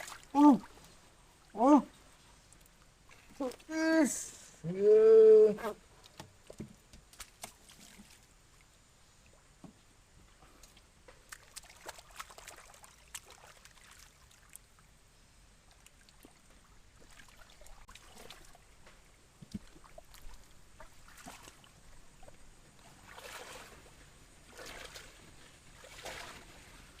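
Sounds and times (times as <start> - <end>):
water sloshing and splashing: 0.0 - 3.7, 5.8 - 9.8, 10.5 - 15.0, 15.6 - 27.0
loud water splashes: 25.8 - 26.6.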